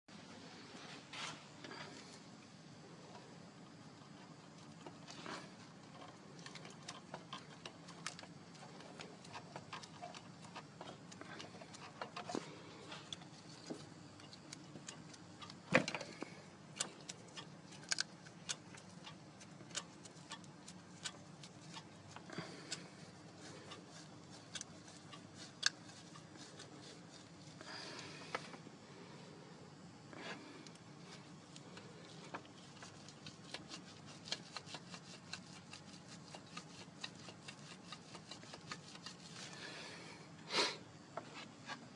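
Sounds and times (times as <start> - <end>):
piston knocks and ticks: 4.0 - 26.7, 32.3 - 39.6.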